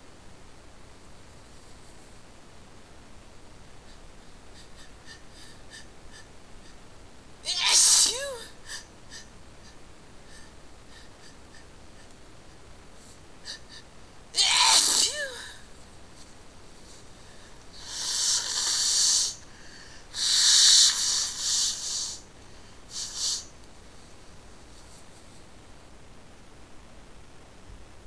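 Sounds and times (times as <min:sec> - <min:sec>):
person sneezing: 0:07.5 - 0:08.8, 0:14.4 - 0:15.6, 0:22.9 - 0:23.5
nose blowing: 0:14.4 - 0:15.5, 0:17.8 - 0:19.4, 0:20.2 - 0:22.2, 0:22.9 - 0:23.5
short sniffs: 0:17.8 - 0:23.5.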